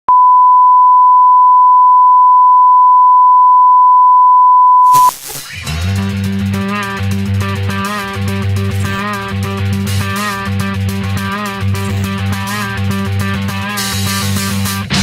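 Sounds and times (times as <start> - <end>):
music with bass and guitar: 5.4 - 15.0.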